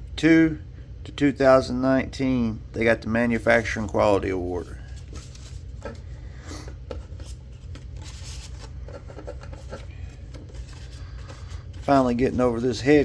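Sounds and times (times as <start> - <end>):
steady low hum: 0.0 - 13.0
paper and card rustling: 3.3 - 13.0.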